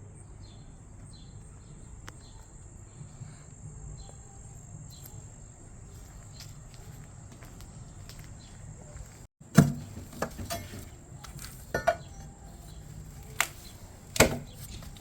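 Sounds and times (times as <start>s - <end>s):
bird chirps: 10.8s - 15.0s.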